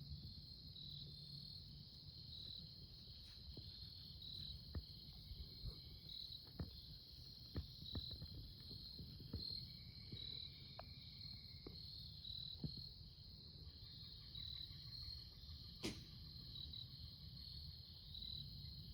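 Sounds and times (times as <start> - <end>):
insects chirping: 0.0 - 18.9
sharp crack: 15.8 - 16.2.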